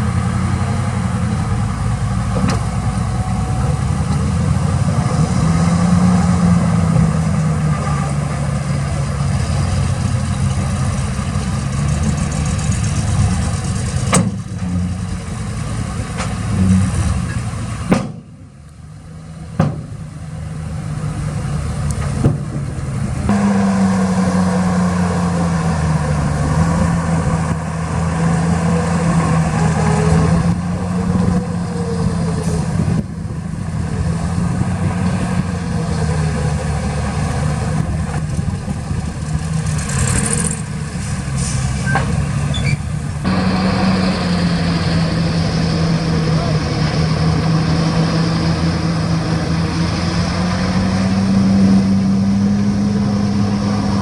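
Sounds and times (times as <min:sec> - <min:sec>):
diesel engine running: 0:00.0 - 0:54.0
sharp knocks: 0:17.9 - 0:18.3.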